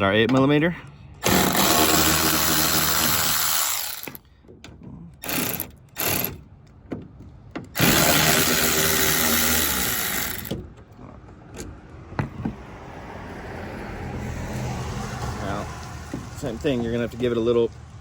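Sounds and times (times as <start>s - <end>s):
cordless drill spinning: 1.2s - 4.2s, 5.2s - 6.4s, 7.8s - 10.5s.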